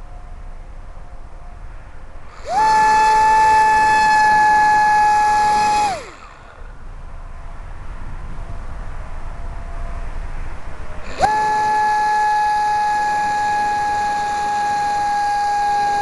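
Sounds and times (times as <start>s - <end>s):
electric motor propeller whine: 2.0s - 8.0s, 10.5s - 16.0s.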